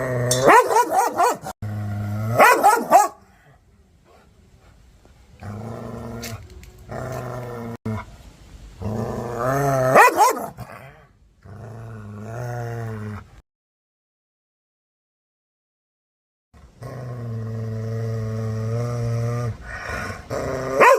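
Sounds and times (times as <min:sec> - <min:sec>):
dog barking sharply: 0:00.5 - 0:01.5, 0:02.4 - 0:03.2, 0:10.0 - 0:10.5
dog growling: 0:05.4 - 0:08.1, 0:08.8 - 0:13.4, 0:16.8 - 0:20.9.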